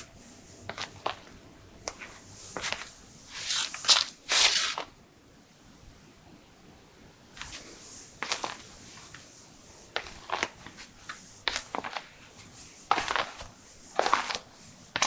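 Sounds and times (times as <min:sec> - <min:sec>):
footsteps on a floor: 0:01.9 - 0:04.1, 0:10.0 - 0:15.0.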